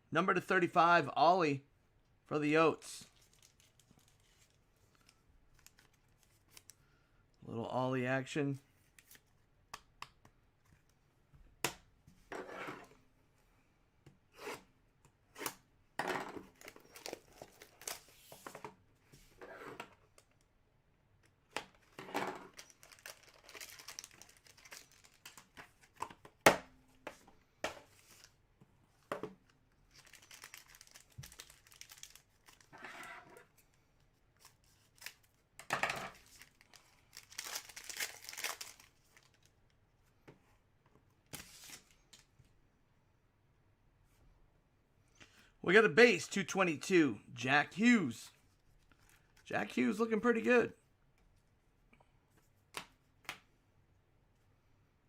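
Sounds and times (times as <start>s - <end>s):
wrappers tearing and crinkling: 22.5s - 25.5s, 29.9s - 32.7s, 36.2s - 39.5s
cards scraped and shuffled: 41.3s - 42.0s.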